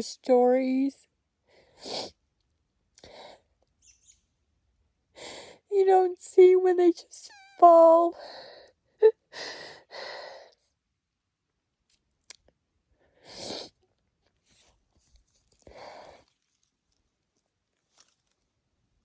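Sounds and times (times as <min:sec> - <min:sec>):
person breathing: 0:08.2 - 0:10.6, 0:15.6 - 0:16.4.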